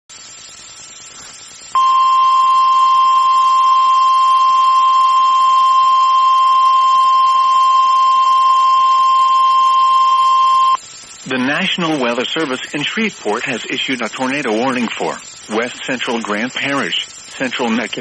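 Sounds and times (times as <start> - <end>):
faint steady hiss: 0.1 - 18.0
loud steady alarm tone: 1.7 - 10.8.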